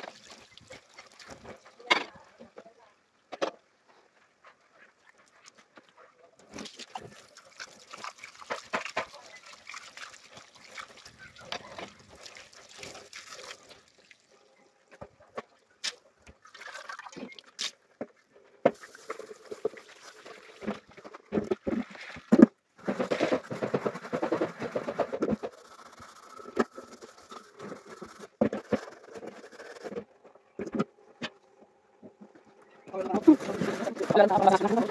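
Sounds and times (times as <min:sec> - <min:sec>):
running tap water splashing: 0:06.8 - 0:14.1.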